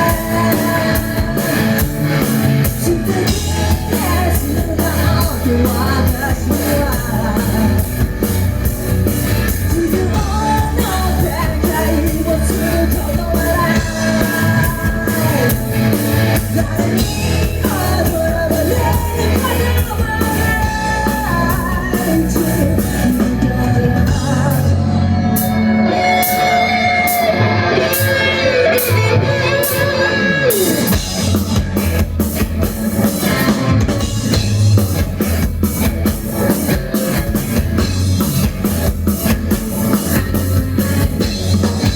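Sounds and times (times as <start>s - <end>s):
person singing: 0.0s - 2.0s, 2.6s - 8.1s, 9.6s - 31.0s
rock band playing: 0.0s - 41.9s.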